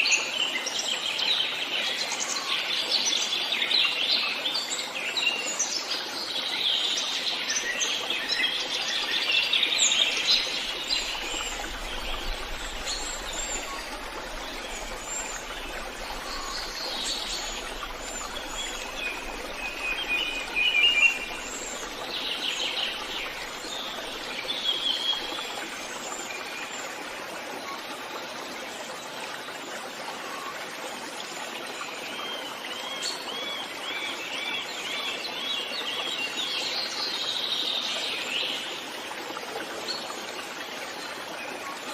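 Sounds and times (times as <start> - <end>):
songbirds singing and chirping: 0.0 - 27.2.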